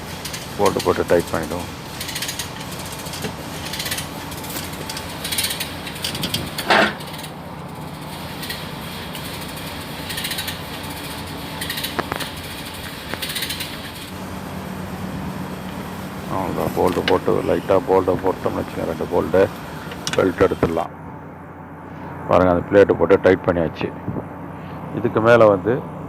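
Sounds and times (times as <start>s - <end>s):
low hum: 0.0s - 25.1s
ratchet clicking: 0.2s - 7.4s, 8.2s - 14.1s
metallic clank: 2.0s - 7.4s.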